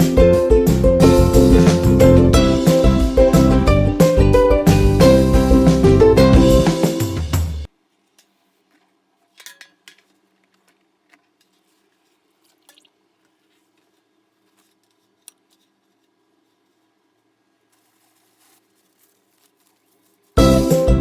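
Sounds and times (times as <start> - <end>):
background music: 0.0 - 7.7, 20.4 - 21.0.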